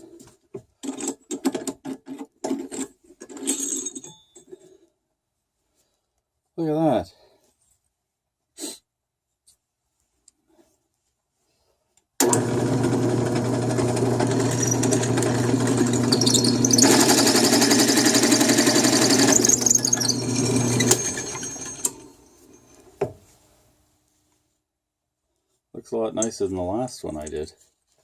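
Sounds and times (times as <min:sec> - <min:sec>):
drill bit cutting: 0:12.2 - 0:22.2
drill press motor humming: 0:12.2 - 0:22.3.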